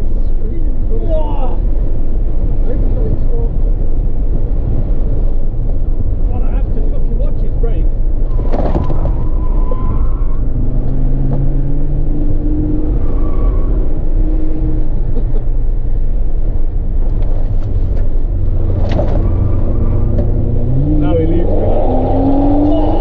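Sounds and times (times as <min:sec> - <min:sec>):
car engine revving: 0:00.0 - 0:23.0
road noise: 0:00.0 - 0:23.0.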